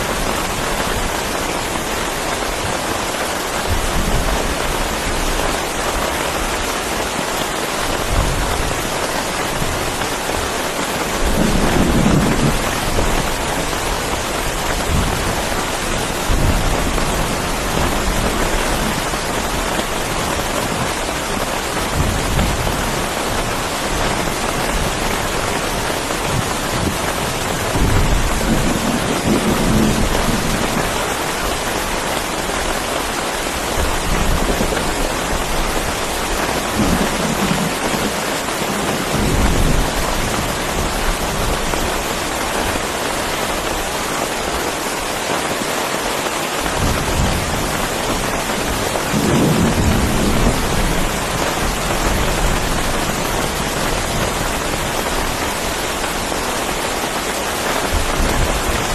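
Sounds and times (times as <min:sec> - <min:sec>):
heavy rain pouring: 0:00.0 - 0:58.9
low rolls of thunder: 0:11.2 - 0:13.7, 0:24.3 - 0:30.8, 0:48.5 - 0:55.0.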